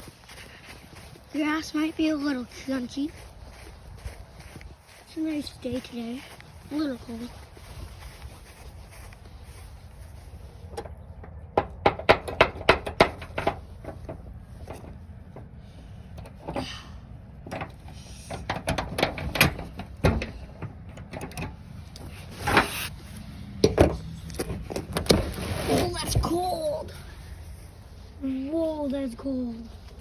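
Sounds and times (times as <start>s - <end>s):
knocks and clatter of gear: 17.4s - 22.7s
rustle: 21.6s - 30.0s.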